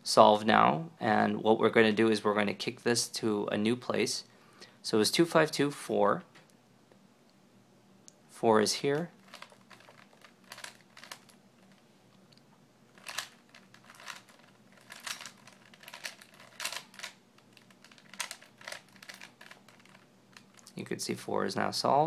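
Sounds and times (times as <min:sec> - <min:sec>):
rubik's cube turning clicks: 0:13.0 - 0:20.6.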